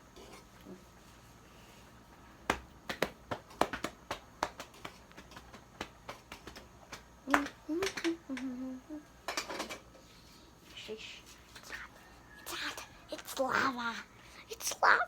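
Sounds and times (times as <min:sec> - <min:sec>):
person humming: 0:07.3 - 0:09.2.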